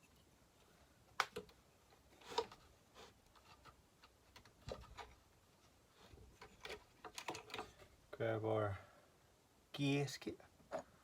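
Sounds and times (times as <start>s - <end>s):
small parts clicking and knocking: 6.3s - 7.9s.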